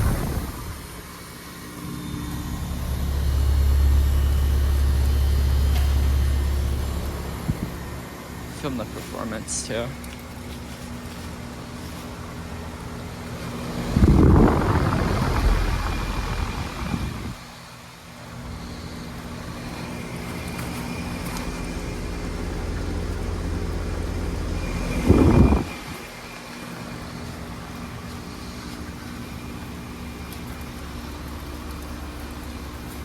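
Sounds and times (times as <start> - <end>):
heat pump humming: 0.0 - 33.0
loud rush: 13.7 - 17.4.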